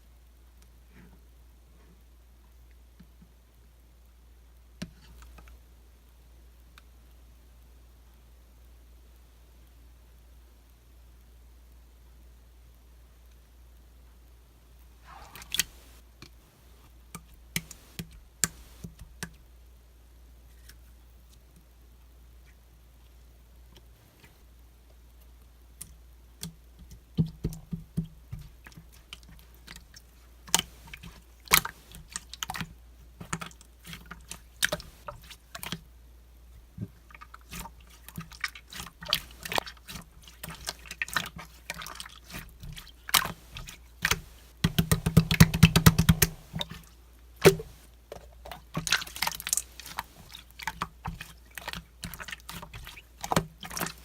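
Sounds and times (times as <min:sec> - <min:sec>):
slime squished by hand: 0:15.0 - 0:16.0, 0:26.4 - 0:35.9, 0:36.6 - 0:54.0.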